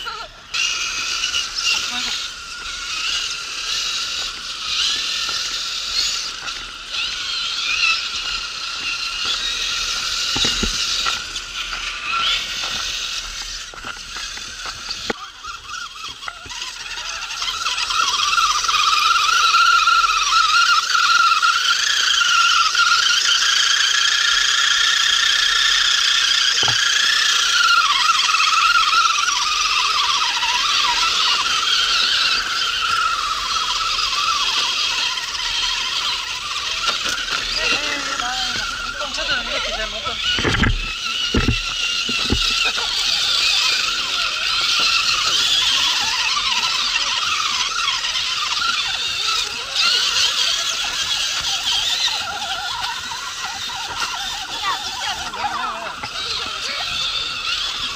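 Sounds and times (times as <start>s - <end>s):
electric motor and gears whining: 0.0s - 57.9s.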